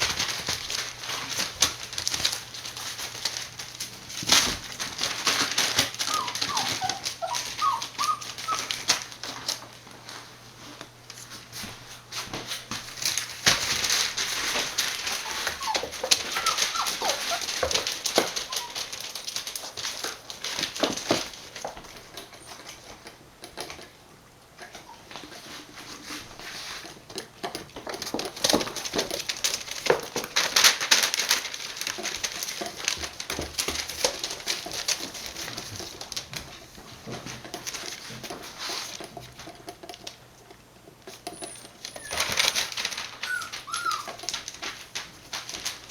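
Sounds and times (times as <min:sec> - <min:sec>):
scuffling and scratchy rustling: 0:00.0 - 0:23.0, 0:24.7 - 0:40.2, 0:41.1 - 0:45.9
puppies whimpering: 0:05.6 - 0:09.0, 0:14.8 - 0:19.5, 0:41.2 - 0:44.4.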